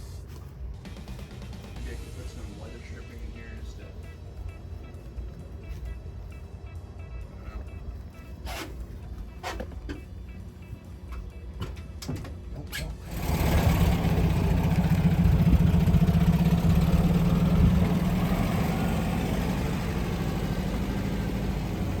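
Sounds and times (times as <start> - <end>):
vehicle engine starting and idling: 0.0 - 22.0.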